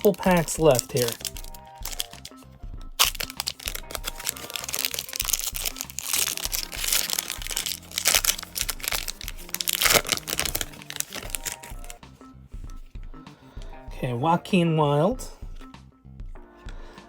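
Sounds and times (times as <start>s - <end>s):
foil wrapper tearing and crinkling: 0.0s - 2.4s, 3.0s - 12.0s
background music: 0.0s - 17.0s.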